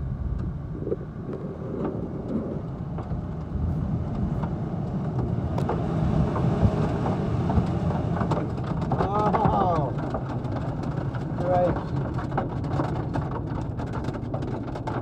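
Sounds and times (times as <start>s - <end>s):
hailstones ticking on hard surfaces: 2.9s - 15.0s
falling hail and rain: 4.0s - 15.0s.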